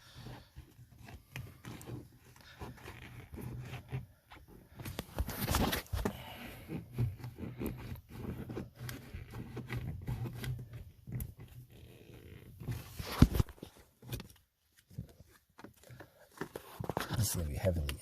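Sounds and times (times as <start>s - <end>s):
plastic container scraping on car door: 12.4s - 14.2s.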